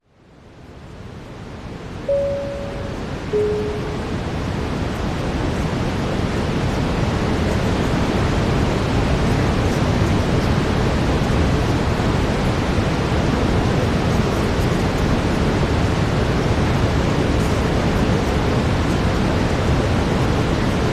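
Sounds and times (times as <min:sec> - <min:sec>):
brown noise hiss: 0:00.1 - 0:20.9
faint sustained tone: 0:02.1 - 0:04.3.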